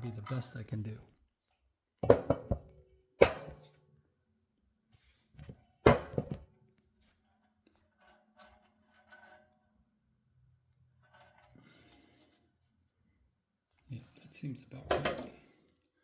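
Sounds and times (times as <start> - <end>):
metallic clicks of pliers: 14.9 - 15.4.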